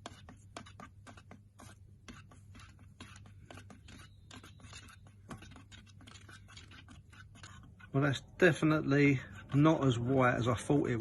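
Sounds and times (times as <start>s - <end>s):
stirrer tapping against can: 0.0s - 8.2s
stirrer scraping in paint tin: 0.0s - 11.0s.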